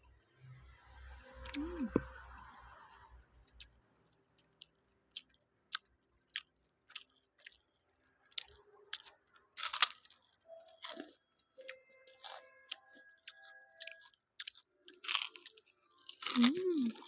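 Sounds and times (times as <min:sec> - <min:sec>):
close-up chewing with crunches: 0:03.6 - 0:07.7, 0:08.3 - 0:17.0.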